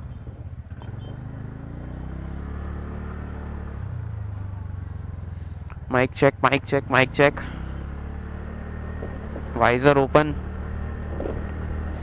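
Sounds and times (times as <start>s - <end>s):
motorcycle engine running: 0.0s - 12.0s
wind rumble: 10.8s - 12.0s.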